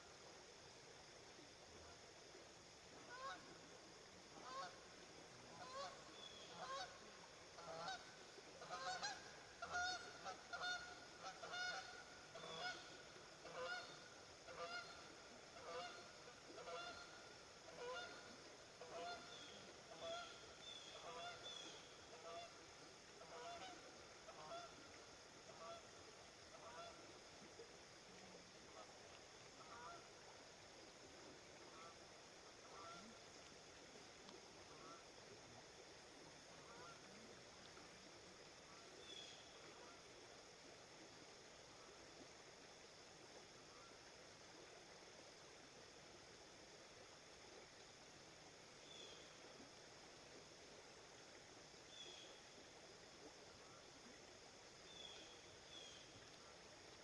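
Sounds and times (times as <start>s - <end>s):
geese honking: 5.6s - 6.9s, 7.6s - 15.0s, 15.6s - 16.0s, 16.6s - 17.1s, 17.7s - 18.2s, 19.9s - 20.4s.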